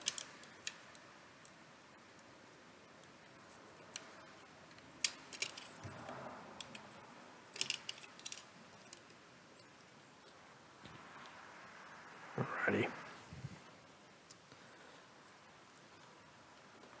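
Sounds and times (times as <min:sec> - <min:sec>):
small parts clicking: 0:00.0 - 0:10.4.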